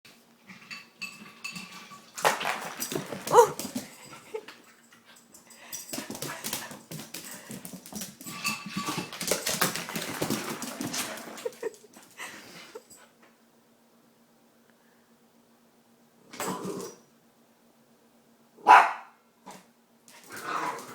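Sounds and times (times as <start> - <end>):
ice cubes clattering: 1.5 - 3.8, 8.8 - 11.7.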